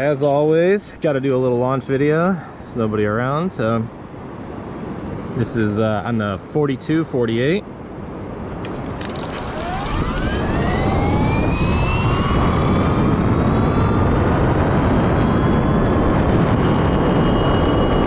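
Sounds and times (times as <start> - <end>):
loud rushing noise: 8.6 - 15.0
electric motor whine: 8.7 - 14.2.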